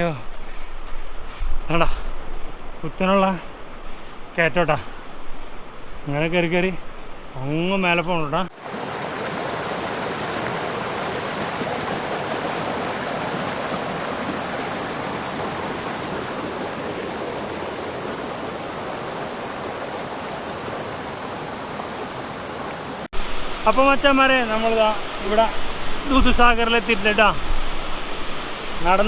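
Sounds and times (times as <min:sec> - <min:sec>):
waterfall rushing: 0:08.5 - 0:29.0.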